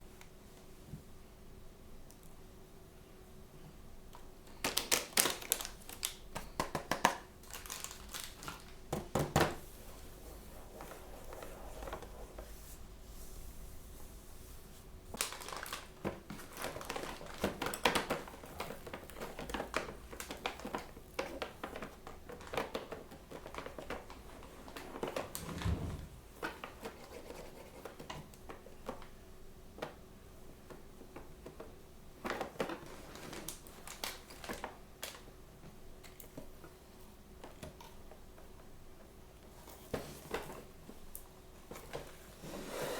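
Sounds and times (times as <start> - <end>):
plastic packaging crinkling and tearing: 4.6 - 8.9, 15.2 - 25.4, 32.5 - 35.2.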